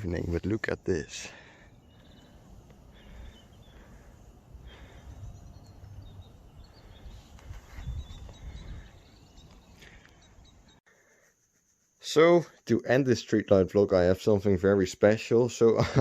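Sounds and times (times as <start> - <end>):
faint high chirps: 1.7 - 10.8.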